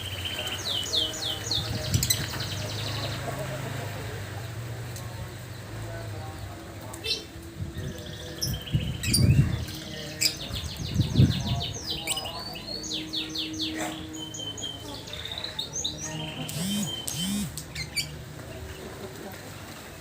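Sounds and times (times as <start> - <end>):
lovebird chattering trill: 16.1 - 18.1.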